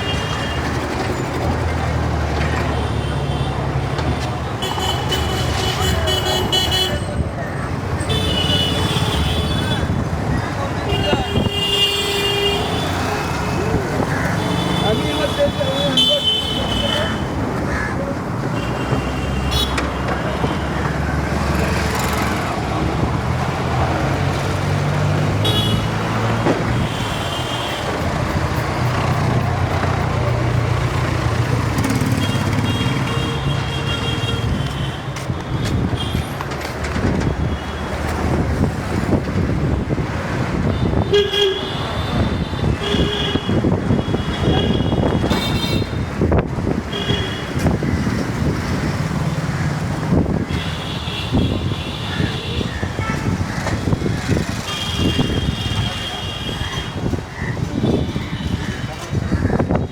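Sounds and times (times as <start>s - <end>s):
road noise: 0.0s - 59.9s
vehicle horns tooting: 4.5s - 7.3s, 8.0s - 10.1s, 10.8s - 17.4s, 18.5s - 20.9s, 25.3s - 30.4s, 31.7s - 36.4s, 40.6s - 46.2s, 46.8s - 47.8s, 50.5s - 57.2s.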